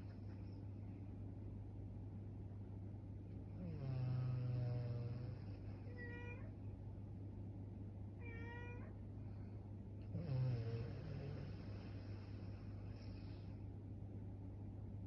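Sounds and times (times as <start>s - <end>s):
woman snoring: 3.5s - 5.6s, 10.1s - 13.3s.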